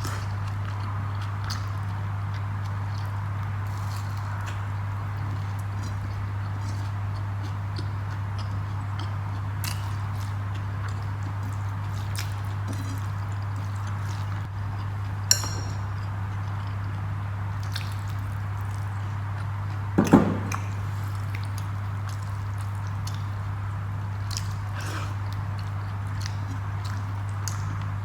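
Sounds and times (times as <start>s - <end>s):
steady low hum: 0.0s - 28.0s
wet chewing: 0.0s - 28.0s
sharp clink: 15.3s - 15.9s.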